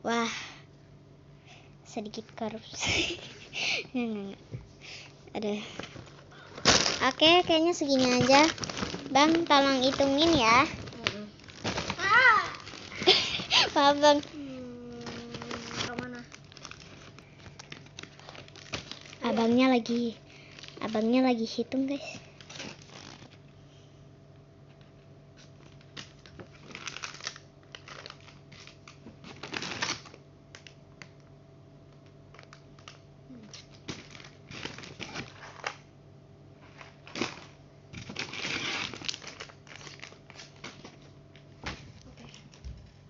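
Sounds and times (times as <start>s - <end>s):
steady low hum: 0.0s - 43.0s
plastic packaging crinkling: 5.6s - 23.5s, 25.4s - 31.3s, 31.9s - 35.8s, 36.6s - 42.7s.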